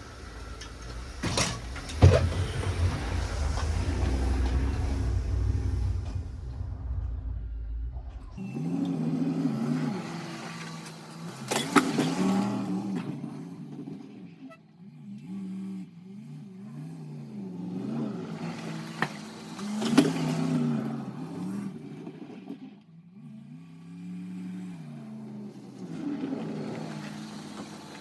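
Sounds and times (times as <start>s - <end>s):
truck engine revving: 0.0s - 14.1s
loud thumps: 0.8s - 8.8s.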